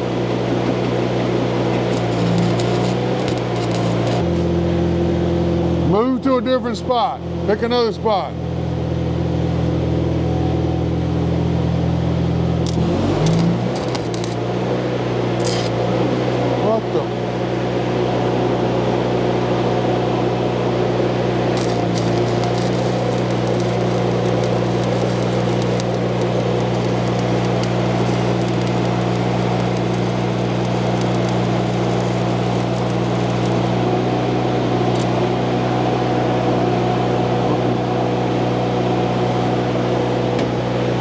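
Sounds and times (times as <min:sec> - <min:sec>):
welding machine hum: 0:01.6 - 0:04.6, 0:12.2 - 0:16.3, 0:21.5 - 0:35.6
welding arc crackling and sizzling: 0:01.7 - 0:04.6, 0:12.4 - 0:14.7, 0:15.4 - 0:15.9, 0:21.6 - 0:35.3
sharp welding pops: 0:01.8 - 0:04.5, 0:12.7 - 0:14.5, 0:15.4 - 0:15.8, 0:21.6 - 0:34.0, 0:34.8 - 0:35.3.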